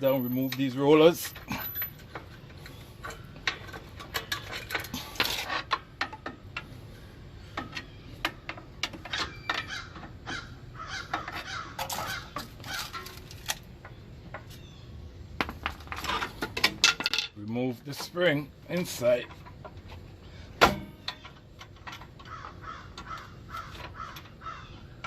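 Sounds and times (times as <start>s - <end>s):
metal clinks and knocks: 0.0s - 6.7s, 15.4s - 24.5s
squeaky metal scrapes: 0.0s - 13.6s.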